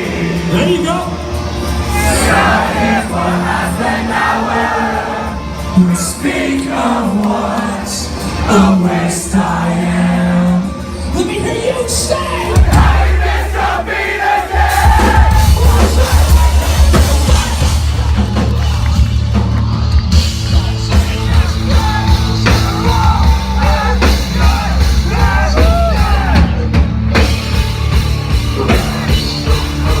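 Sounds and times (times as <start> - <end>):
sung and shouted vocals: 0.0 - 26.7
heavy bass: 0.0 - 30.0
pounding drums: 12.5 - 30.0
distorted guitars: 14.5 - 30.0.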